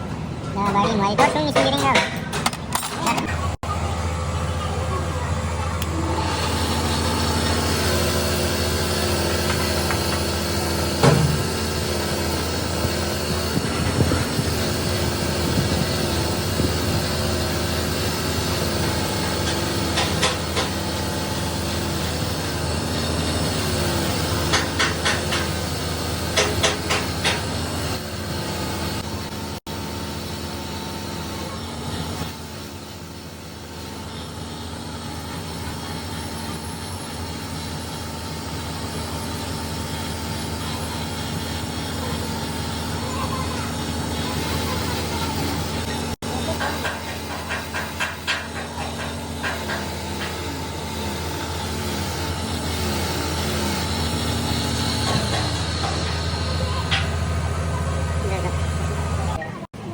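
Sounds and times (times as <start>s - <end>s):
motor humming: 0.0s - 59.9s.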